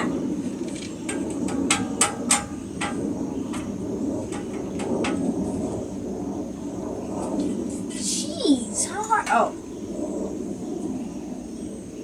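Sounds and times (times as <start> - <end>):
low steady hum: 0.0 - 12.0
sharp metal knocks: 1.0 - 5.6.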